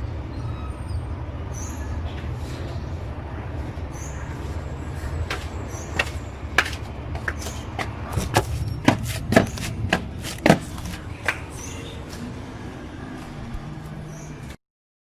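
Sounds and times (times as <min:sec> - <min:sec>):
sharp knocks: 0:05.3 - 0:11.0.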